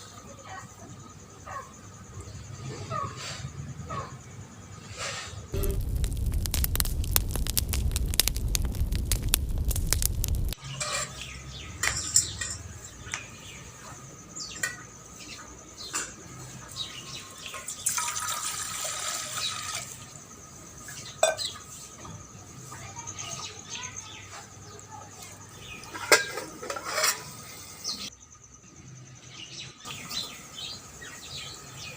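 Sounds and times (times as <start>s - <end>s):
stove fire crackling: 5.6s - 10.6s.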